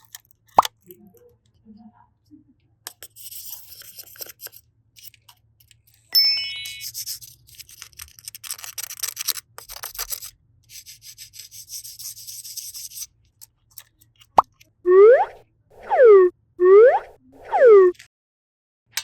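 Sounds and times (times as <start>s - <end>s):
bell-like ding: 6.2s - 7.0s
crackly rubbing and rustling: 7.3s - 11.3s.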